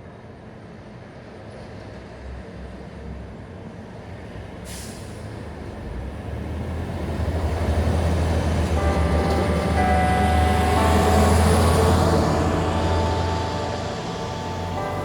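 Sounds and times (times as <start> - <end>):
heavy vehicle engine rumble: 3.7 - 15.0.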